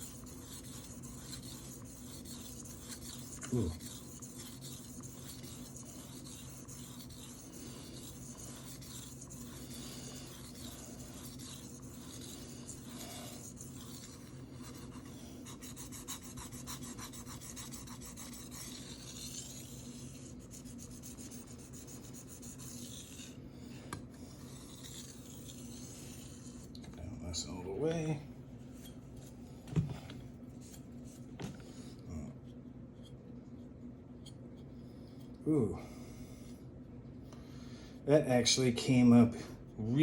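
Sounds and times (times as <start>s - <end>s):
knife scraping on whetstone: 0.0s - 23.4s, 24.2s - 26.7s.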